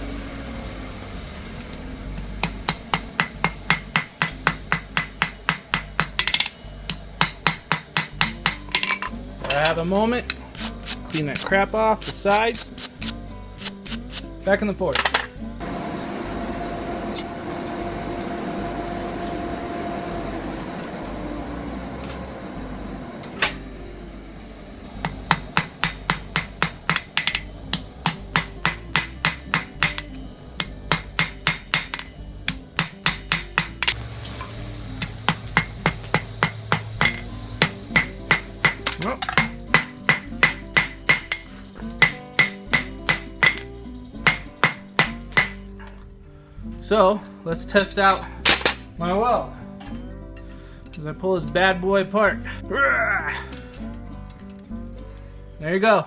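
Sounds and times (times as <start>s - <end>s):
hammer striking steel on anvil: 2.4s - 10.4s, 25.0s - 34.0s, 35.0s - 45.7s
steady hiss: 33.9s - 38.8s.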